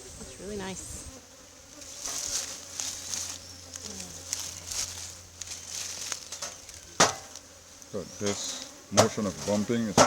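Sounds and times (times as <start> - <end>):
beehive frame knocking: 6.3 - 7.4, 8.2 - 10.0.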